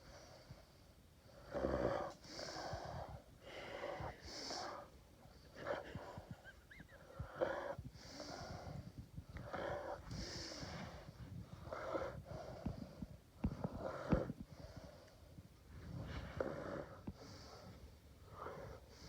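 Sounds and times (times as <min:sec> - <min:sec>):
dog snoring: 0:01.4 - 0:03.1.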